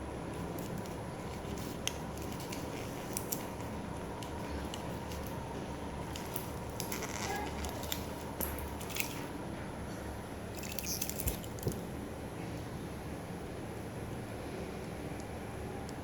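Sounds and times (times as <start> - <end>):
small clicks and crinkles: 0.3 - 9.3, 10.5 - 11.9.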